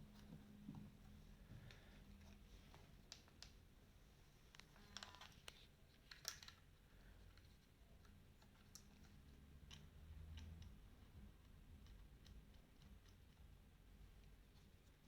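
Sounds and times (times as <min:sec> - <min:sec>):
low room hum: 0:00.0 - 0:15.0
faint clicks and handling knocks: 0:04.5 - 0:15.0.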